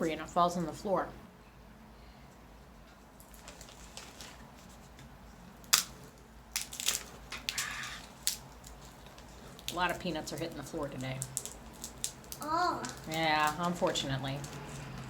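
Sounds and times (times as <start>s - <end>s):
dry shell crinkling: 3.1s - 15.0s
peanut shells cracking: 5.6s - 15.0s.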